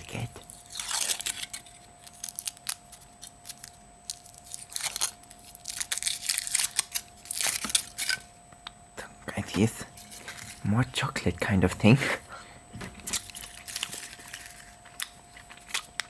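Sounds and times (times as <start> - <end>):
foil wrapper tearing and crinkling: 0.5 - 8.3, 13.0 - 16.0.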